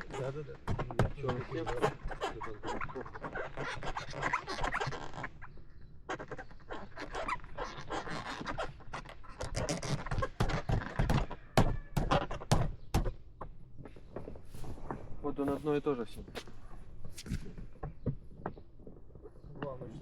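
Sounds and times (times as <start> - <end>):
rustles: 13.6 - 20.0.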